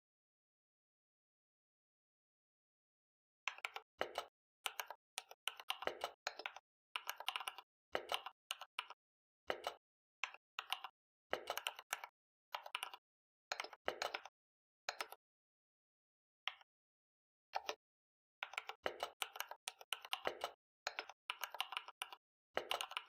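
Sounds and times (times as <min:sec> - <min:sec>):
computer keyboard typing: 0:03.5 - 0:14.3, 0:14.9 - 0:15.2, 0:17.6 - 0:17.8, 0:18.4 - 0:23.0.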